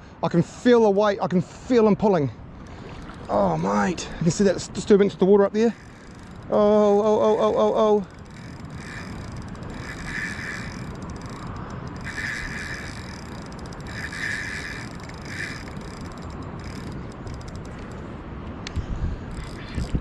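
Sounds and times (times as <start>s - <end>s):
fishing reel bursts: 2.6s - 4.9s, 5.6s - 18.0s, 19.3s - 20.0s.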